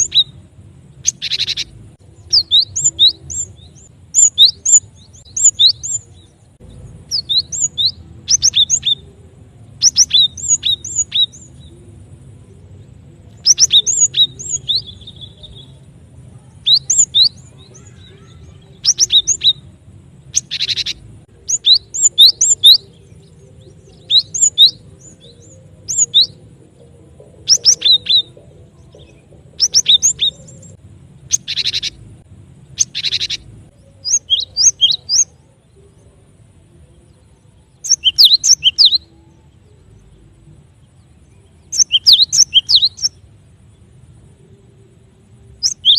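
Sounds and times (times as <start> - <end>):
harsh rasping bird calls: 0.0 - 6.1, 16.5 - 19.6, 20.3 - 23.2, 27.4 - 35.4, 37.8 - 39.1, 45.6 - 45.9
high chipping bird calls: 0.0 - 36.2, 37.5 - 43.9, 45.6 - 45.9.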